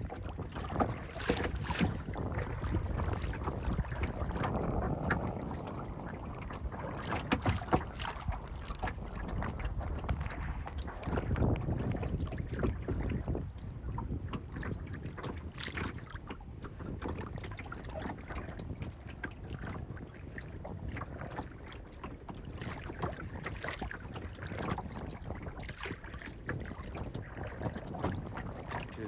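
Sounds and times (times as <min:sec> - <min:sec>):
boat engine rumble: 0:00.0 - 0:29.0
wind buffeting microphone: 0:00.0 - 0:29.0
water splashing: 0:00.2 - 0:13.5.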